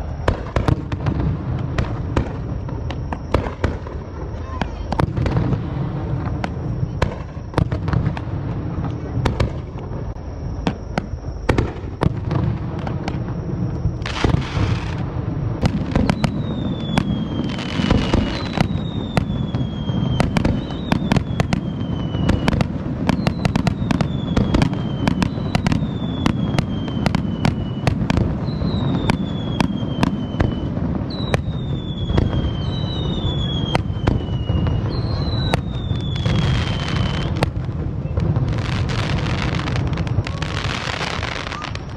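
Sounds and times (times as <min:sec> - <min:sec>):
crackling hisses: 0:00.0 - 0:41.9
firework bangs and booms: 0:00.0 - 0:41.9
falling whistling tones: 0:13.0 - 0:38.2, 0:39.1 - 0:41.9.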